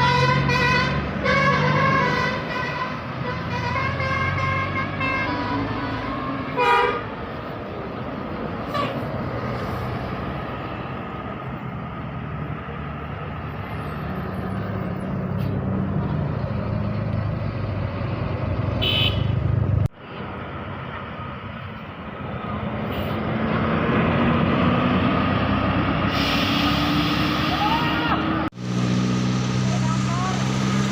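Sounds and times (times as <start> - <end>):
bus diesel engine drone: 0.0 - 30.9
engine rising in pitch: 23.2 - 30.9.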